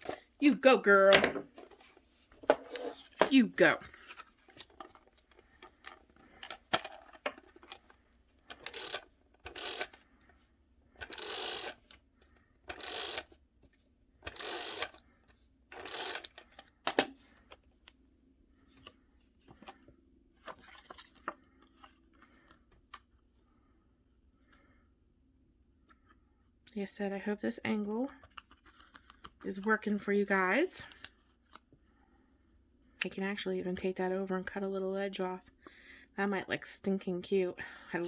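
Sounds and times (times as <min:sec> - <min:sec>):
paper rustling and scraping: 0:20.4 - 0:22.4.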